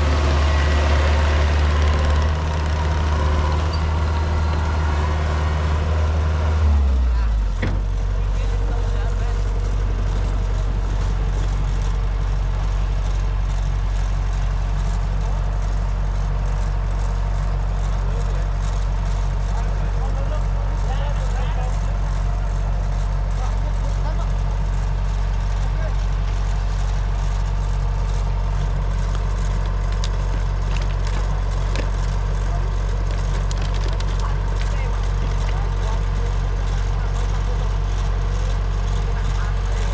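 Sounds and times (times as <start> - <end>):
combine harvester engine humming: 0.0 - 39.9
crackles and clicks: 21.4 - 35.6.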